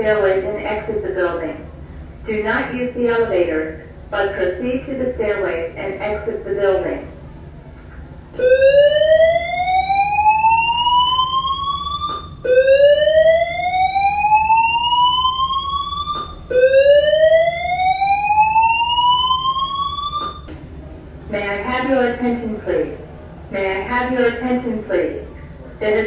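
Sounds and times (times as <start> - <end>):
fire alarm whoop tone: 8.4 - 20.5.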